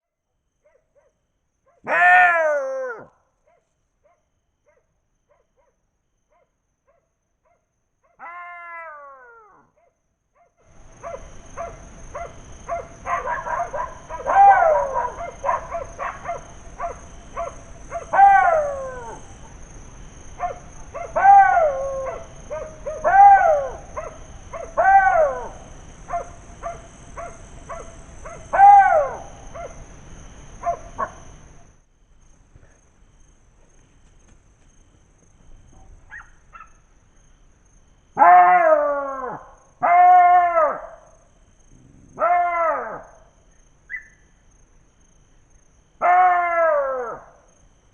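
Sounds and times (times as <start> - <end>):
jackals howling: 1.8 - 3.1, 38.2 - 41.0, 41.8 - 43.2, 46.0 - 47.4
short yelps: 1.8 - 3.1.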